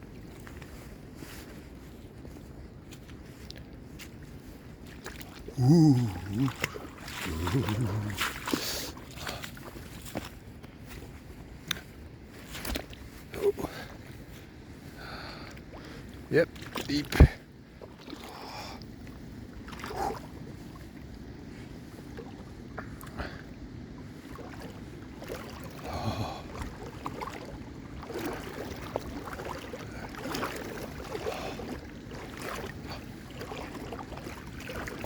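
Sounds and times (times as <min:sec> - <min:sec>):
legs sloshing through water: 0:00.0 - 0:35.0
creek water rushing: 0:04.9 - 0:09.9, 0:22.4 - 0:35.0.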